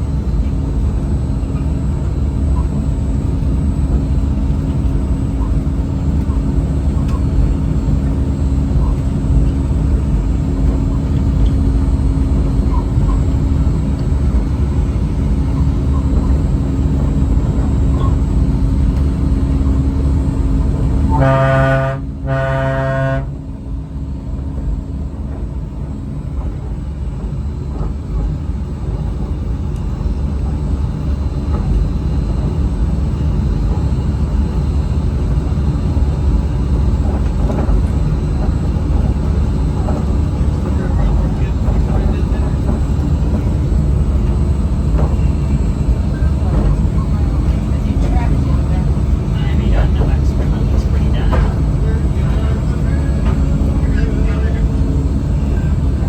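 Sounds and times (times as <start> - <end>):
monorail low rumble and hum: 0.0 - 56.0
monorail horn toots: 20.8 - 23.7.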